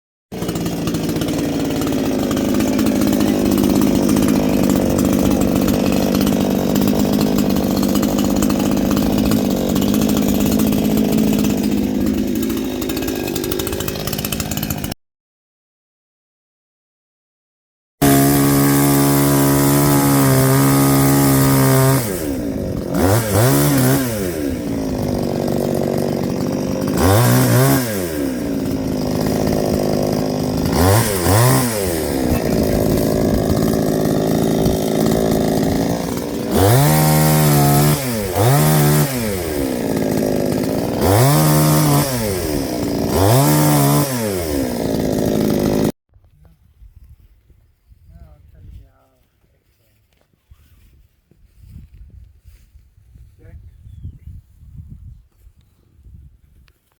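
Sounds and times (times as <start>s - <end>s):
chainsaw revving: 0.3s - 15.0s, 18.0s - 46.0s.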